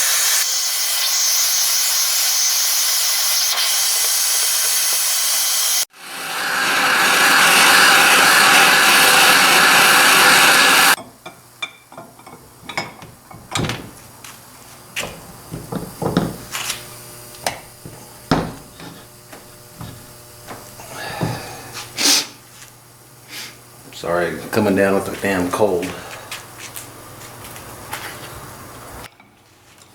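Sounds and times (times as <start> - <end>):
torch flame hissing: 0.0 - 11.0, 14.9 - 24.7
tools and metal knocking: 11.0 - 14.0, 15.0 - 16.7, 17.4 - 21.5.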